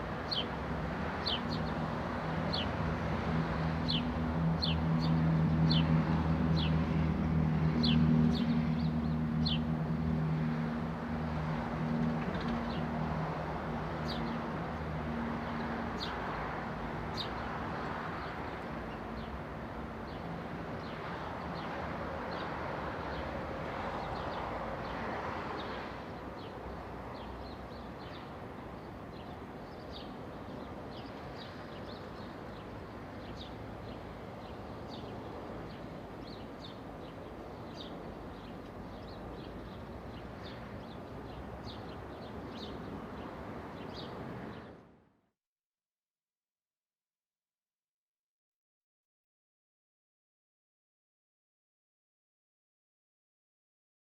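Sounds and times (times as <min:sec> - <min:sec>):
distant traffic hum: 0:00.0 - 0:45.2
small birds chirping: 0:27.2 - 0:44.7.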